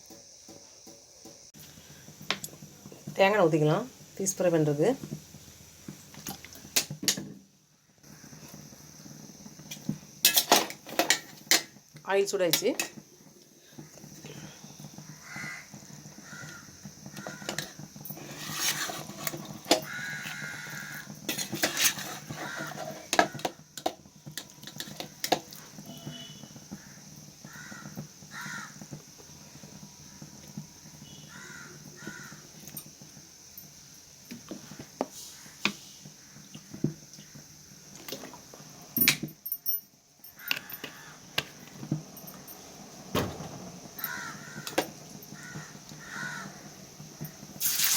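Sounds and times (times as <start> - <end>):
fish sizzling in oil: 0.0 - 39.2, 39.9 - 47.9
utensils clinking against pan: 10.2 - 11.7, 21.3 - 23.9
crows cawing: 15.1 - 17.6, 19.8 - 21.1, 22.4 - 23.4, 26.8 - 28.8, 31.3 - 32.5, 40.4 - 41.2, 44.0 - 44.8, 45.4 - 46.7.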